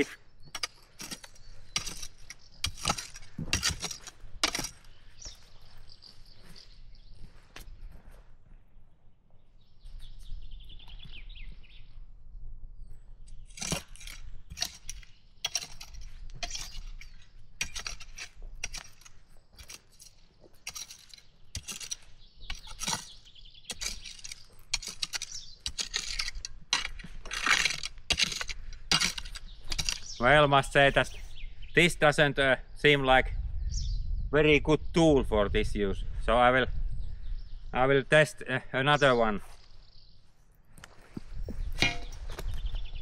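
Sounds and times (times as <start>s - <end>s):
metal tool scraping soil: 0.0s - 5.4s, 13.4s - 30.2s, 41.8s - 42.8s
small metal clink: 41.8s - 42.4s.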